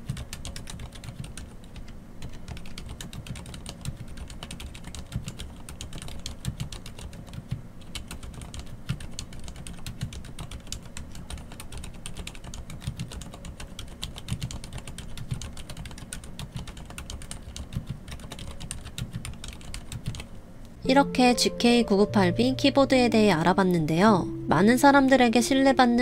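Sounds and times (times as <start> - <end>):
fast typing on mechanical keyboard: 0.0 - 20.3.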